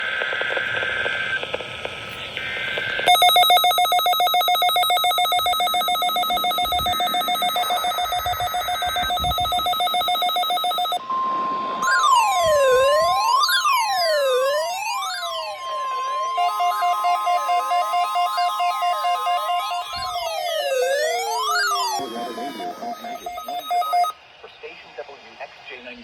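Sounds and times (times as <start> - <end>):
electric bell ringing: 3.1 - 11.0, 14.1 - 24.1
siren-like sweeping tones: 3.1 - 24.2
steady high tone: 3.1 - 24.2.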